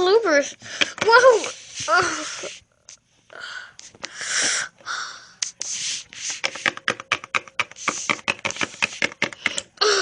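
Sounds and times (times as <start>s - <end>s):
rapid tapping and clicking: 6.3s - 9.8s.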